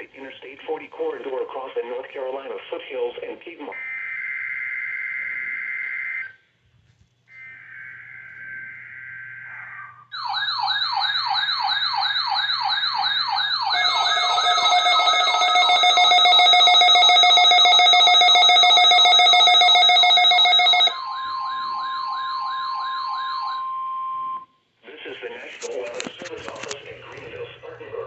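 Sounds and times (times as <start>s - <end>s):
steady multi-tone alarm: 3.7s - 6.4s, 7.3s - 24.6s
rapid up-and-down siren: 3.8s - 6.4s, 7.4s - 24.0s
single-pitch warning alarm tone: 7.4s - 24.6s.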